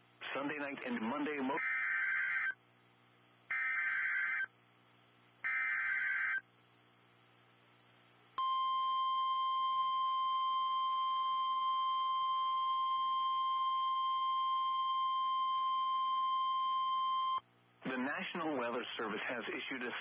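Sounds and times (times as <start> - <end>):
steady electronic alarm tone: 1.6 - 2.6, 3.5 - 4.5, 5.4 - 6.4, 8.4 - 17.4.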